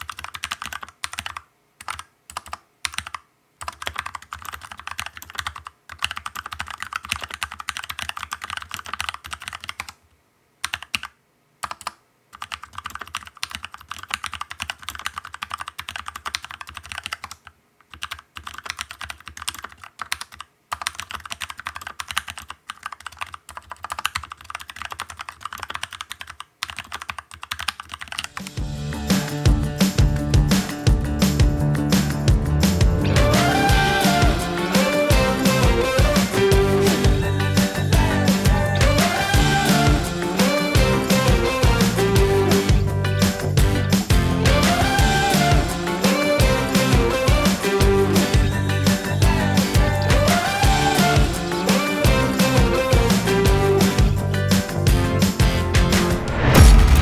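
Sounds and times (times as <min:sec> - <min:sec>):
mechanical keyboard typing: 0:00.0 - 0:10.0, 0:10.6 - 0:28.5.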